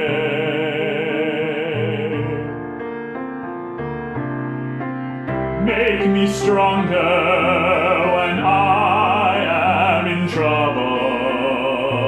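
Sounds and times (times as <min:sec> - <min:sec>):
person singing with vibrato: 0:00.0 - 0:02.6, 0:05.6 - 0:12.0
piano chords: 0:00.0 - 0:12.0.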